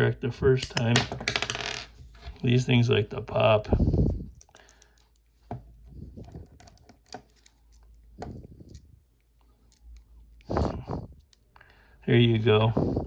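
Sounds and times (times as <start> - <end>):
soft handling noise: 0.8 - 2.8.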